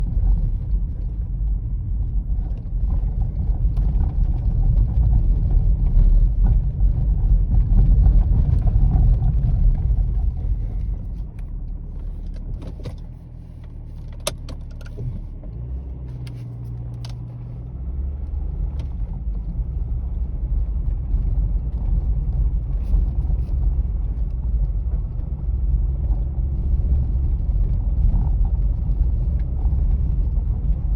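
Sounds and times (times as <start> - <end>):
car engine low rumble: 0.0 - 30.9
car rattle: 7.8 - 15.4.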